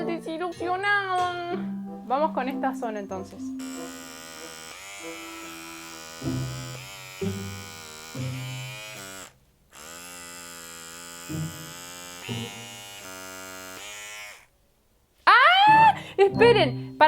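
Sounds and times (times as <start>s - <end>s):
small vacuum motor whining: 3.6s - 14.5s.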